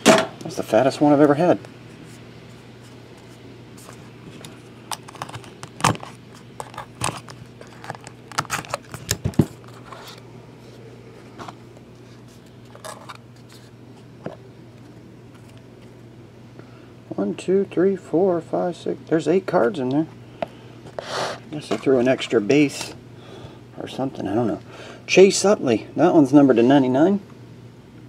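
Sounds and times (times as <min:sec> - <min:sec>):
steady low hum: 0:00.0 - 0:28.0
trading cards handled: 0:02.5 - 0:15.9
card pack wrapper crinkling: 0:04.4 - 0:10.2.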